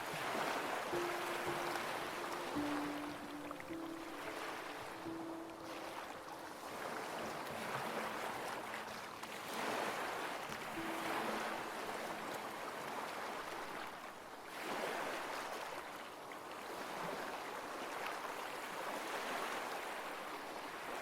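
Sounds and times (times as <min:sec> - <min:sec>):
ocean waves washing in: 0:00.0 - 0:15.8.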